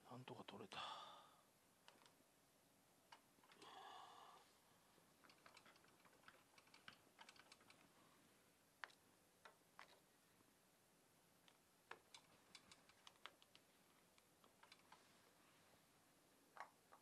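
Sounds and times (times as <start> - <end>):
small parts and tools clicking: 3.1 - 3.7, 5.2 - 7.9, 11.4 - 15.0.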